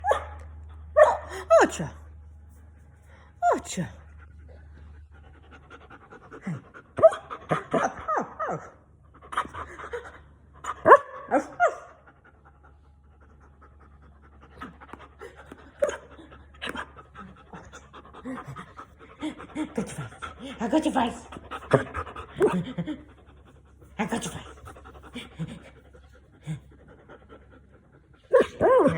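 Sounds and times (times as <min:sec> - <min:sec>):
puppies panting: 0:03.4 - 0:08.1, 0:11.7 - 0:28.9.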